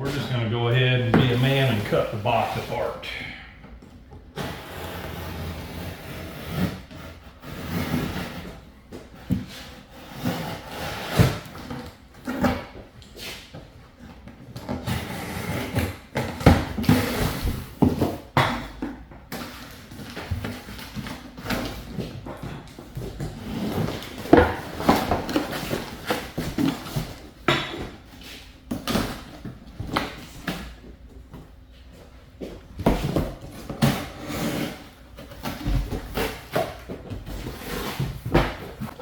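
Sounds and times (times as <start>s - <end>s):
cardboard scraping and rasping: 4.4s - 8.6s, 9.2s - 11.8s, 33.4s - 39.0s.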